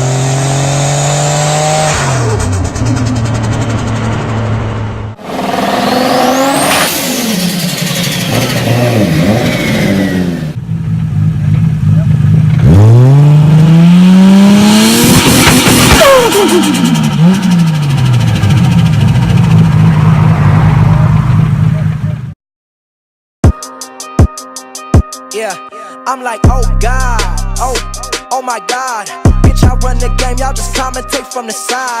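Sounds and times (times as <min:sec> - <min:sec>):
car engine revving: 0:00.0 - 0:22.2.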